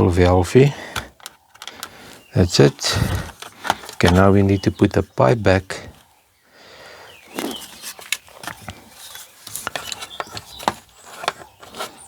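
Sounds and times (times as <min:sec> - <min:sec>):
plastic parts clicking and knocking: 0:00.8 - 0:04.8, 0:07.9 - 0:11.9.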